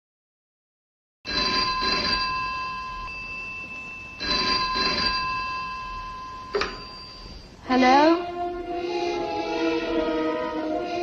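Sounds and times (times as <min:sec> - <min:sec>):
telephone bell ringing: 0:01.3 - 0:07.6.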